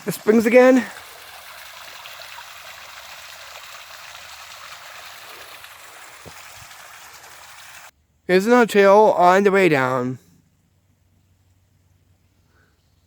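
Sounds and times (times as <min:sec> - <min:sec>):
stream rushing and trickling: 0:00.0 - 0:08.0.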